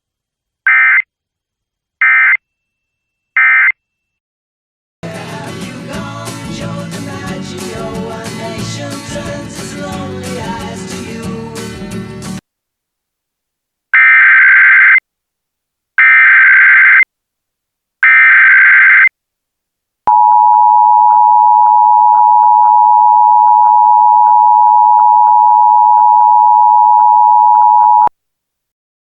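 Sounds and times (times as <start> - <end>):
two-tone attention signal: 20.1 - 28.1.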